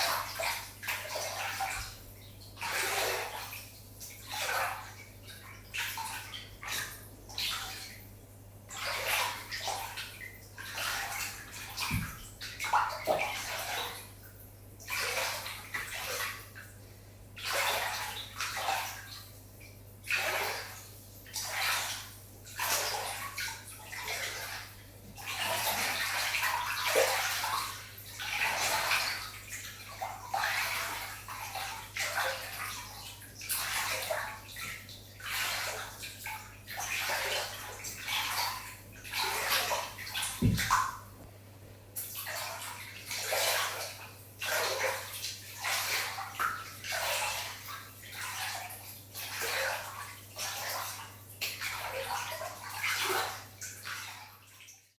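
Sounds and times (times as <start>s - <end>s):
water splashing and sloshing: 0.0s - 55.0s.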